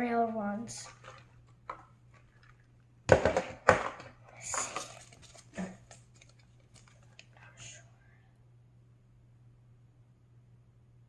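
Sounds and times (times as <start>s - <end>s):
packaging rustling: 0.8s - 2.7s, 3.8s - 7.4s.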